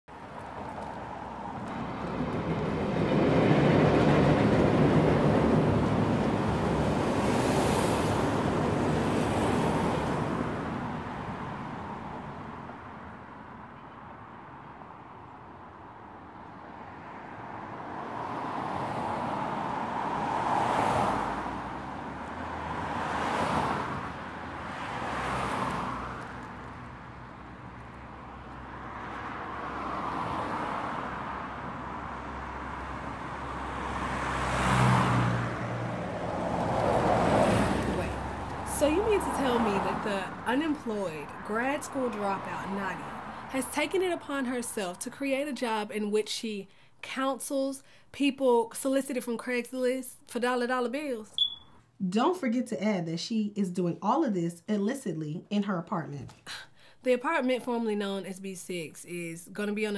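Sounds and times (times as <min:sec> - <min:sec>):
vehicles passing: 0:00.1 - 0:48.0.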